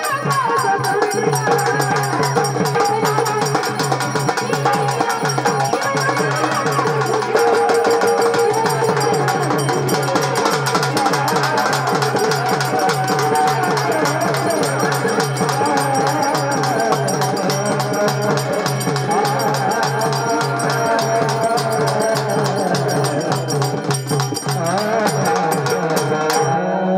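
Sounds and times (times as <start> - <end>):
fast drum beat: 0.0 - 26.5
pitched melody line: 0.0 - 26.8.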